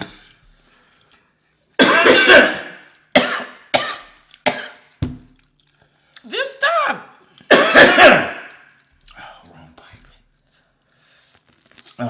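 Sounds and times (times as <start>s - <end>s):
person coughing hard: 1.8s - 4.8s, 7.5s - 8.6s.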